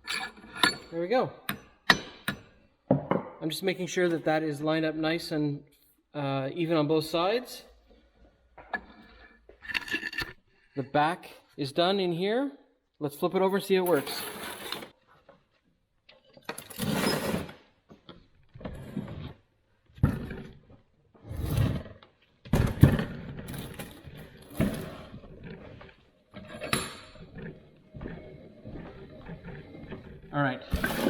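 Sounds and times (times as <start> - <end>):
metal vise scraping and clunking: 0.0 - 2.6, 8.6 - 10.4, 22.8 - 31.0
sharp metal knocks: 1.5 - 2.5.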